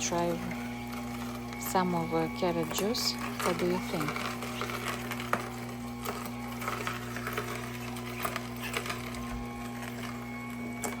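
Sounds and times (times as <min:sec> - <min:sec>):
juicer motor humming: 0:00.0 - 0:11.0.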